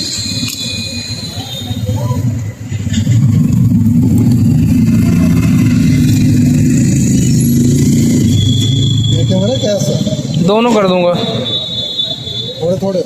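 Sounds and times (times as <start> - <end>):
loud vehicle engine running: 1.6 - 11.5.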